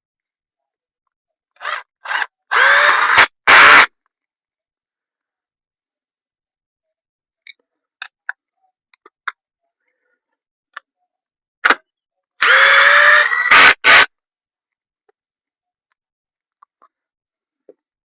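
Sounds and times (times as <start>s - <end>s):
power drill running: 1.6s - 3.9s, 12.4s - 14.1s
loud short noise bursts: 2.7s - 3.9s.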